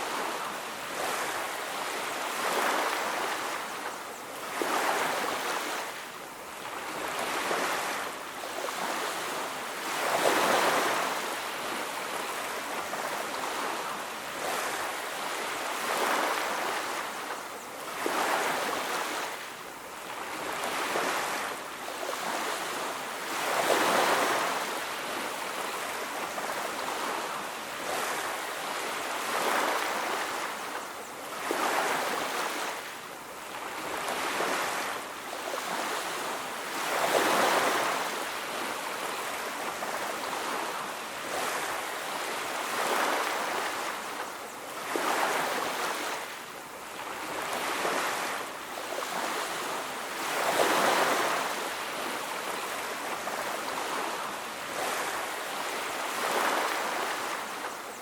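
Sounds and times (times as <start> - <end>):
ocean surf breaking on beach: 0.0 - 58.0.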